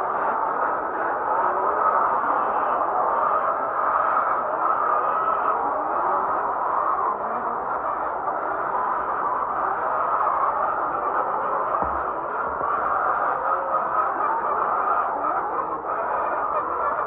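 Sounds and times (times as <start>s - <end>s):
hens clucking: 0.0s - 17.0s.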